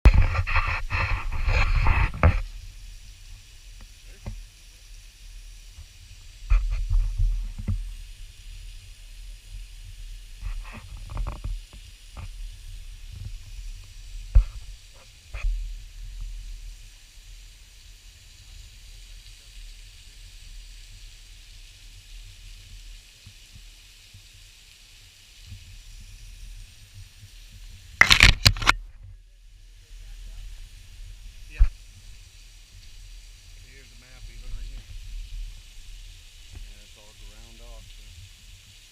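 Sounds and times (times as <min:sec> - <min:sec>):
loud crackling burst: 0:00.0 - 0:16.7
faint high hiss: 0:00.1 - 0:38.9.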